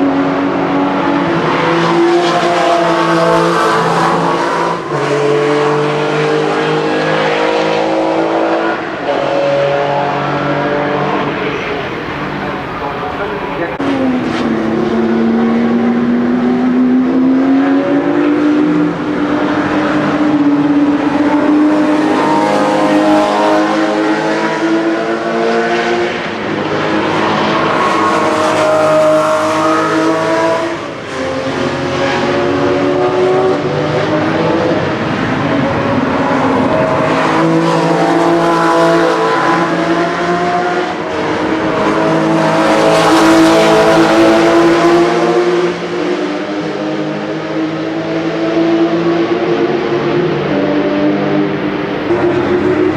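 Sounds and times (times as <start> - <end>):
sports car engine at high revs: 13.6 - 52.9.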